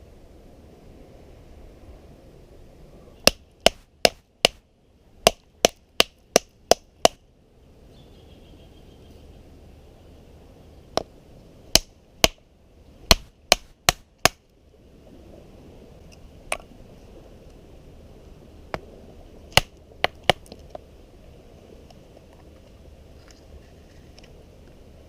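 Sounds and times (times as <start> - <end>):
steady background hiss: 0.0 - 25.0
sharp chopping strikes: 3.2 - 4.6, 11.8 - 12.4, 13.1 - 14.4.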